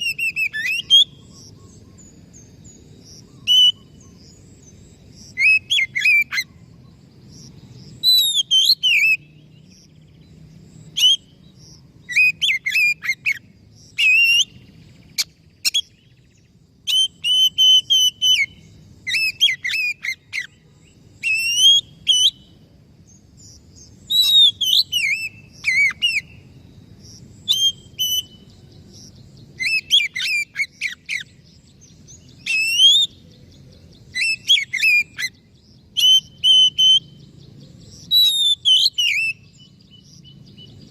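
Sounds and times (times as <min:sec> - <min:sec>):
bird singing whistled phrases: 0:00.0 - 0:01.8, 0:03.4 - 0:04.2, 0:05.4 - 0:06.5, 0:08.0 - 0:09.5, 0:11.0 - 0:11.3, 0:12.1 - 0:13.4, 0:14.0 - 0:16.1, 0:16.9 - 0:20.6, 0:21.2 - 0:22.5, 0:24.0 - 0:26.4, 0:27.4 - 0:28.5, 0:29.6 - 0:31.4, 0:32.2 - 0:33.3, 0:34.1 - 0:37.3, 0:38.0 - 0:40.0.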